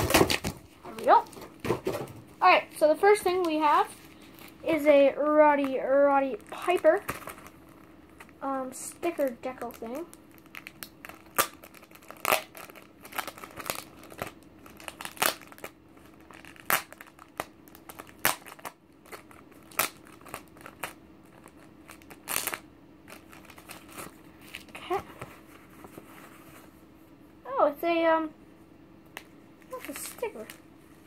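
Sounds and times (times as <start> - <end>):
packaging crinkling: 5.6 - 26.0, 29.6 - 30.6.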